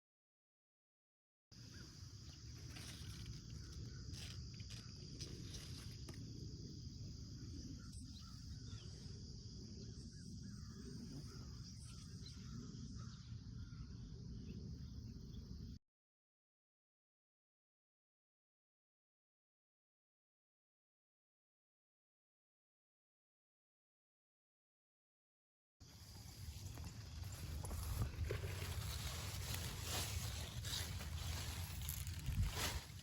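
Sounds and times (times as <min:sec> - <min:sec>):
insects chirping: 0:01.6 - 0:15.8, 0:25.8 - 0:33.0.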